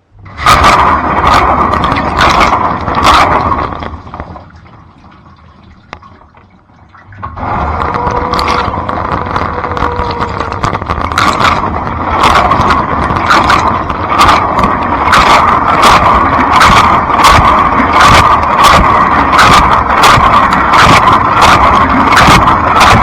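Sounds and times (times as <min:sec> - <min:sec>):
dishwasher water spray rushing: 0:00.2 - 0:23.0.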